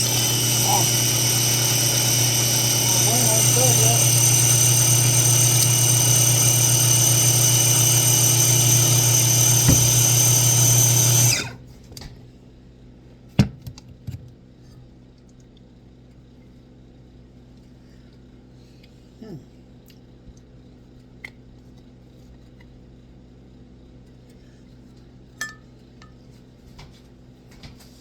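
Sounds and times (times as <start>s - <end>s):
appliance motor whining: 0.0s - 11.6s.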